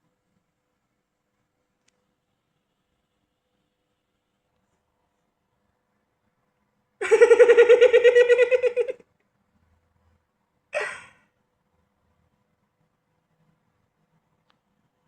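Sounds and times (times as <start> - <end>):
cartoon character giggling: 7.0 - 9.0.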